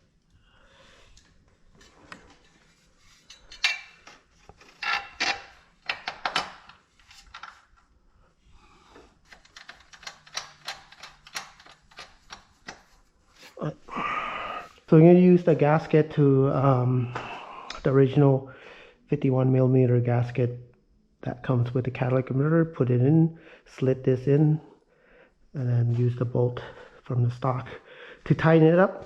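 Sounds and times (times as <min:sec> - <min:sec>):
metal tools clinking: 0:03.1 - 0:07.6.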